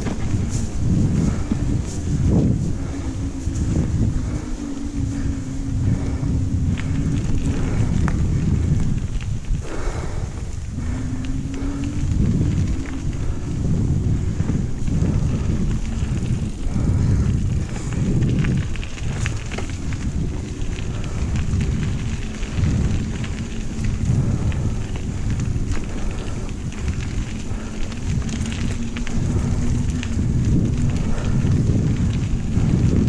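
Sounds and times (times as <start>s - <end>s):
wind buffeting microphone: 0.0s - 33.0s.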